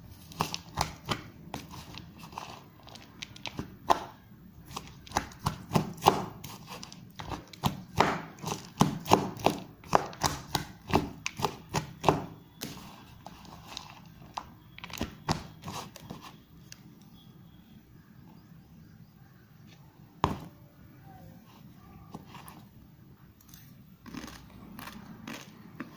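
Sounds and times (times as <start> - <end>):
crunching and chewing noodles: 0.2 - 12.1, 23.5 - 25.9.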